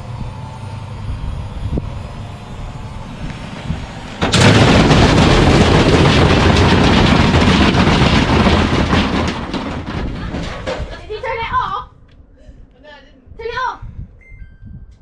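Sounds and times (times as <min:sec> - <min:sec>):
washing machine drum banging: 0:04.2 - 0:11.5.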